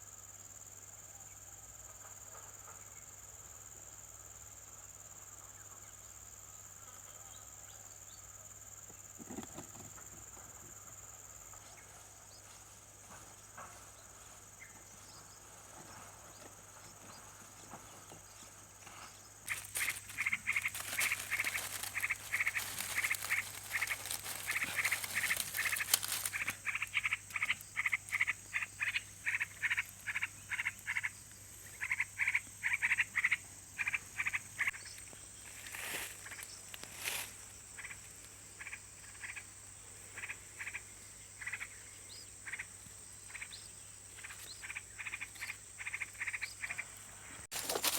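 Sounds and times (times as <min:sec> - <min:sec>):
insects droning: 0:00.0 - 0:47.9
short repeated animal calls: 0:19.5 - 0:31.1.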